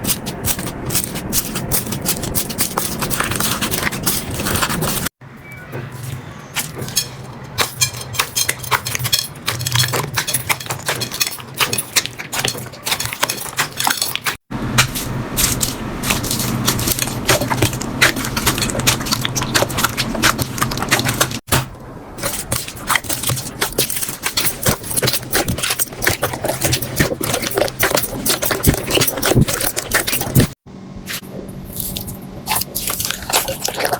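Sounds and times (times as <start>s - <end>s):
low steady hum: 14.5s - 33.9s.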